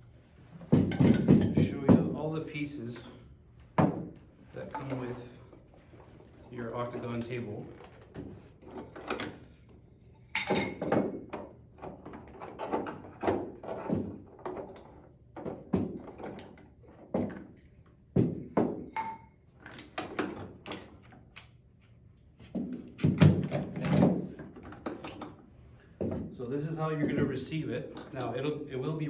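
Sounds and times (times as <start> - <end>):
cart parts knocking and clunking: 0.5 - 2.2.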